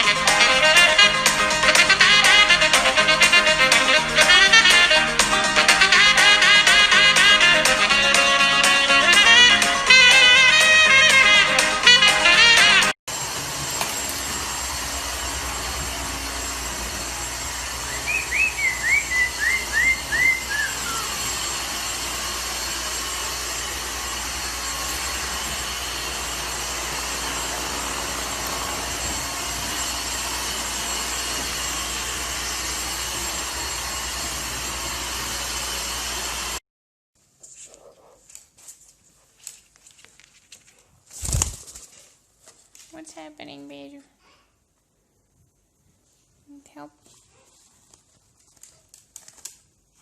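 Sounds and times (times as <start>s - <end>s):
parrot chirping: 17.9s - 21.2s.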